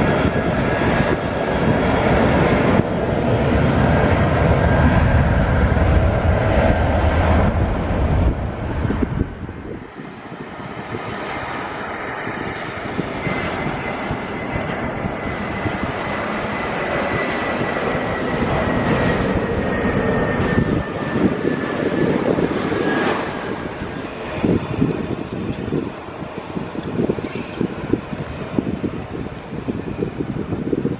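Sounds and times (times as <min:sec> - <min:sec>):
aircraft engine rumble: 0:00.0 - 0:30.9.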